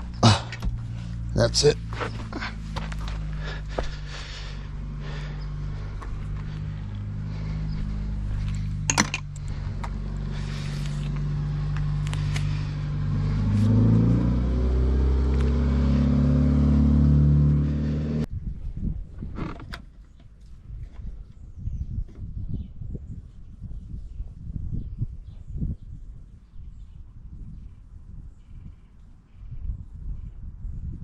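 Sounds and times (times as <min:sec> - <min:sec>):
car engine running: 0:00.0 - 0:18.3.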